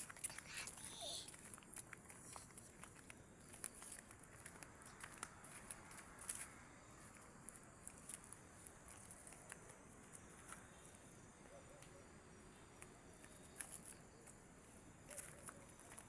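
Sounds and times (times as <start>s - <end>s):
crickets chirring: 0.0s - 16.0s.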